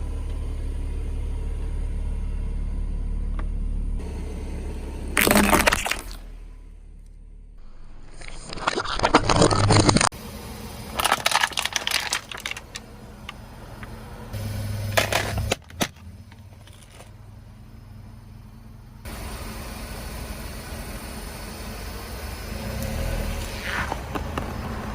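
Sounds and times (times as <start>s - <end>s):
objects crunching under car tyre: 5.2s - 6.4s, 8.0s - 10.1s, 10.9s - 14.0s, 14.9s - 17.3s, 23.1s - 24.9s
sharp crack: 5.2s - 6.4s.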